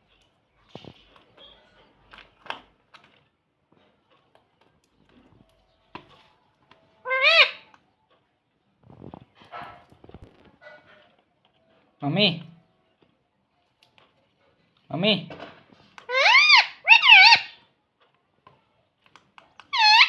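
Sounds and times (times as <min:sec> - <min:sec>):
parakeet clicks and chatter: 0:07.0 - 0:07.9, 0:19.1 - 0:20.0
loud parakeet call: 0:07.1 - 0:07.6, 0:16.1 - 0:17.6, 0:19.7 - 0:20.0.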